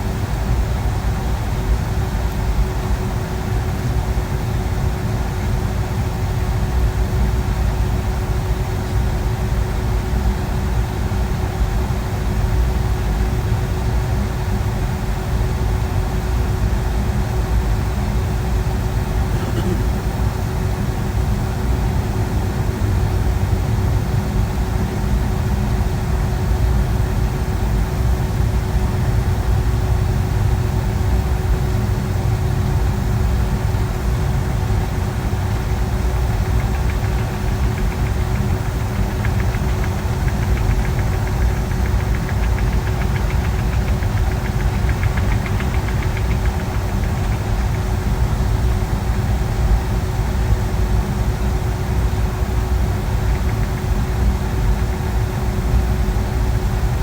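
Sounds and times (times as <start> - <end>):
constant hum: 0.0 - 57.0
airplane cabin roar: 18.1 - 24.2, 31.6 - 57.0.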